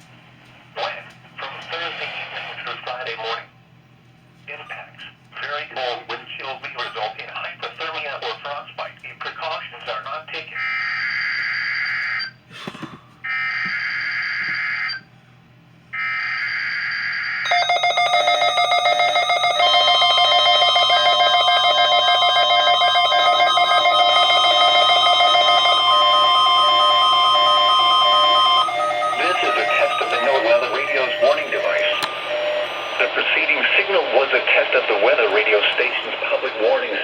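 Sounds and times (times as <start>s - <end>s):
steady warning alarm tone: 16.0s - 34.0s.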